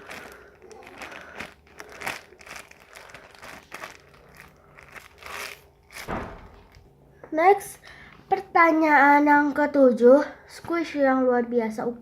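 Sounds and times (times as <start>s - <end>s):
foam toy crinkling and rustling: 0.0s - 6.8s
loud bump: 6.0s - 6.7s.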